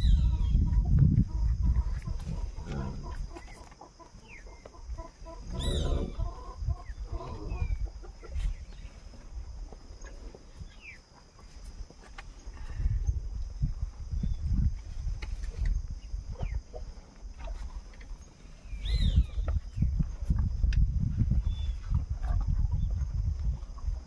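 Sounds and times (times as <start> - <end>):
chickens clucking: 0.0 - 12.2, 15.3 - 18.0.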